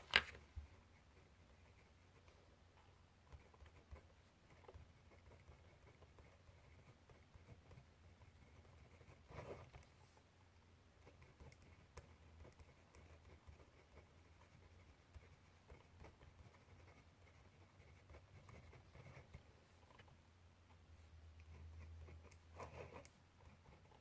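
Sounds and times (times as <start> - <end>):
pen scratching on paper: 3.3 - 10.0, 11.0 - 20.1, 21.4 - 24.0.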